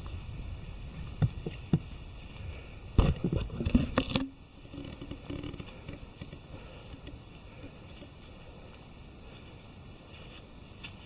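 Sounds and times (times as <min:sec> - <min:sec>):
rustling: 0:00.0 - 0:11.0
footsteps on trail: 0:05.0 - 0:11.0.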